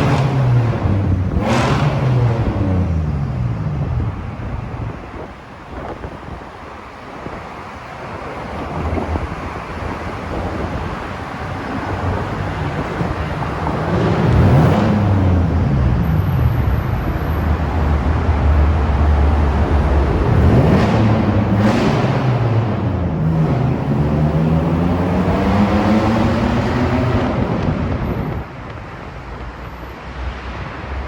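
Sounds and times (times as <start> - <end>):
car road and wind noise: 0.0 - 31.0.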